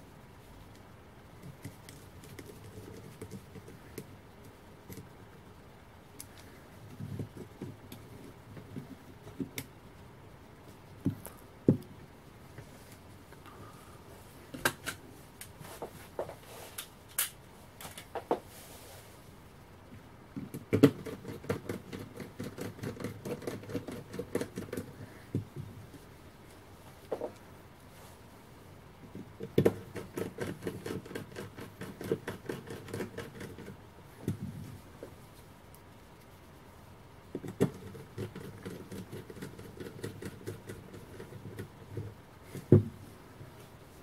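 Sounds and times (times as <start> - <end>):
rapid ticking and scraping: 1.4 - 5.4, 20.4 - 25.4, 29.1 - 34.5, 37.3 - 42.7.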